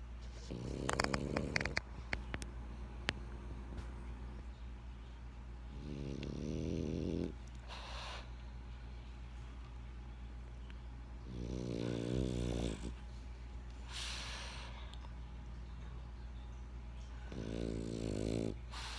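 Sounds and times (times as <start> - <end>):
dog snoring: 0.3 - 1.9, 5.7 - 7.4, 11.2 - 13.0, 17.2 - 18.9
breathy hiss: 7.0 - 8.4, 13.8 - 15.0, 17.3 - 18.9.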